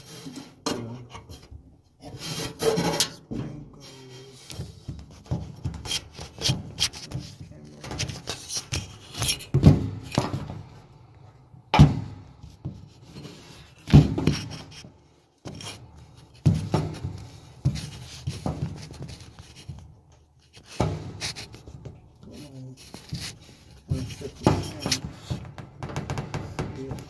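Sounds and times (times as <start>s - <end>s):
metal scraping and rattling: 2.1s - 3.6s.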